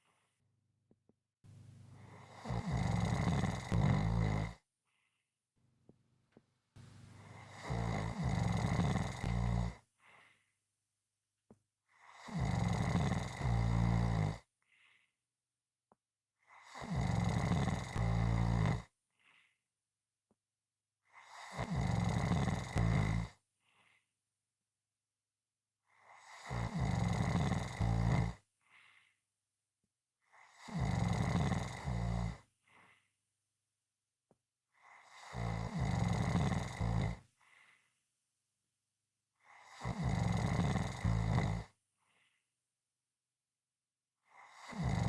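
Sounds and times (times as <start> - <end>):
person snoring loudly: 2.0 - 4.6, 7.2 - 9.8, 12.0 - 14.4, 16.4 - 18.9, 21.2 - 23.4, 25.9 - 28.4, 30.3 - 32.9, 34.8 - 37.2, 39.4 - 41.8, 44.3 - 45.0.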